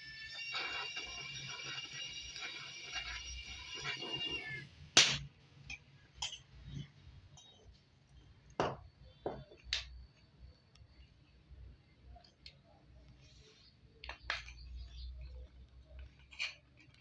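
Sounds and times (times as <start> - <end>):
hard objects clinking: 14.0 - 17.0.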